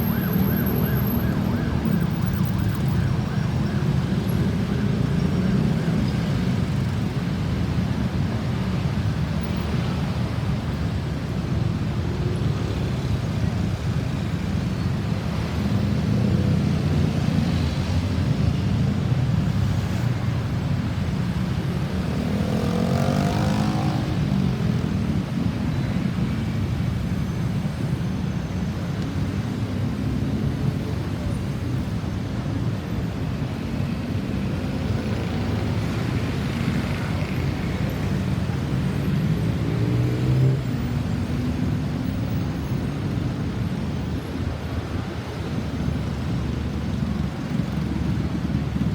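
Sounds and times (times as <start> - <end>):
road traffic rumble: 0.0 - 48.9
vehicle passing by: 21.9 - 24.4.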